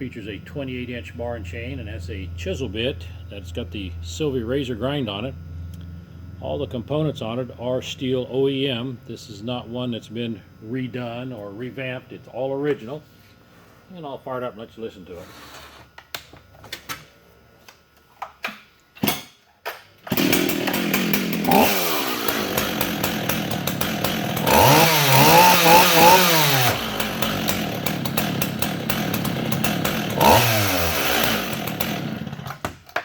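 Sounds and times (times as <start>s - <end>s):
chainsaw starting and revving: 20.1s - 32.6s.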